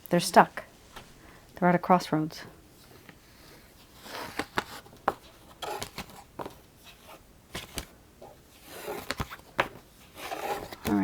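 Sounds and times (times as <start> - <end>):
cards rustling and sliding on table: 2.8 - 11.0.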